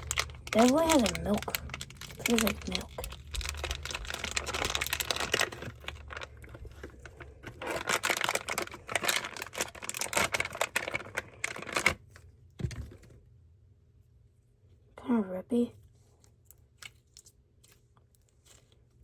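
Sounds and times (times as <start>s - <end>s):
slime tearing: 0.0s - 11.8s
slime squishing with wet clicks: 16.2s - 19.0s.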